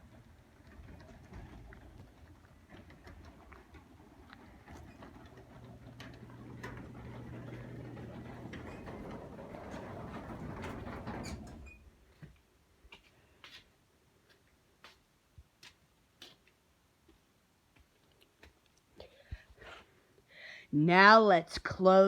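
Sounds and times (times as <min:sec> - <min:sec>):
garage door opener humming: 0:00.0 - 0:12.0.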